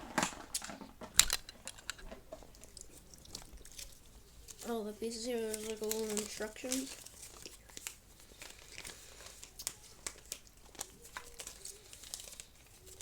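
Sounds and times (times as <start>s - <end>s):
plastic wrapping crinkling: 0.0s - 13.0s
light clicks and crackles: 0.2s - 13.0s.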